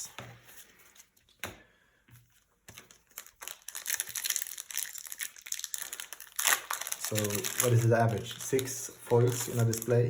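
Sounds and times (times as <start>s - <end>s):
plastic wrapper crinkling: 2.7s - 10.0s.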